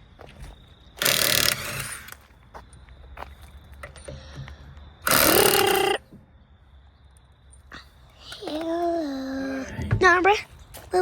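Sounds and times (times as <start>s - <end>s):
power tool bursts: 1.0s - 2.2s, 5.0s - 6.1s.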